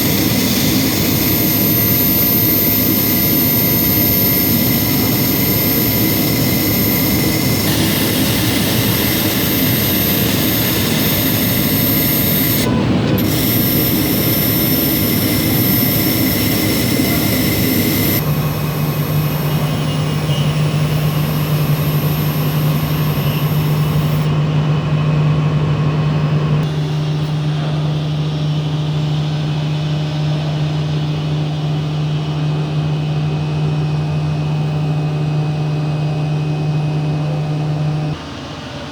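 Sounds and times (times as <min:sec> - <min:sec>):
laser machine running: 0:00.0 - 0:24.3.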